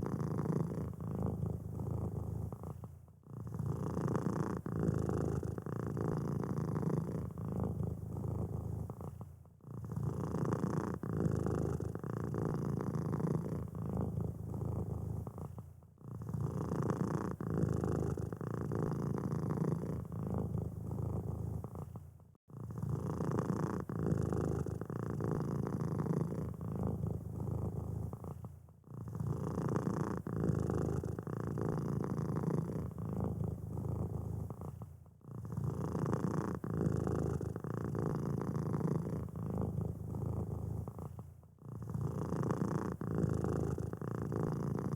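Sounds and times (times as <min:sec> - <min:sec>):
cat purring: 0:00.0 - 0:44.9.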